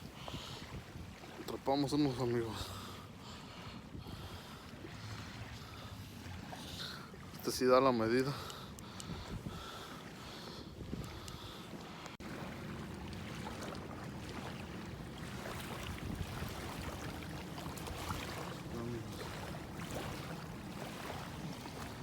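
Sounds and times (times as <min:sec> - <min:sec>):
wind noise: 0:08.9 - 0:09.9, 0:10.6 - 0:11.6, 0:12.2 - 0:22.0
wash of water: 0:12.2 - 0:22.0.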